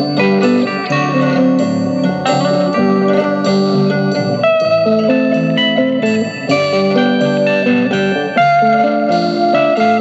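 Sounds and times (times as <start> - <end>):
vinyl record playing music: 0.0 - 10.0.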